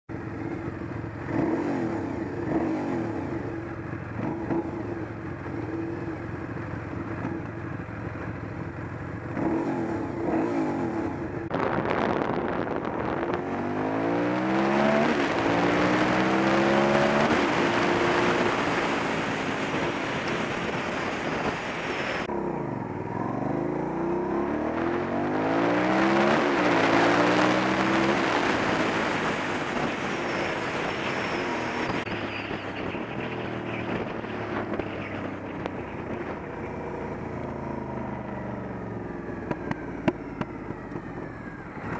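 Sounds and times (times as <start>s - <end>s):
motorcycle engine revving: 0.1s - 41.9s
wind noise: 11.2s - 22.3s, 24.6s - 37.2s.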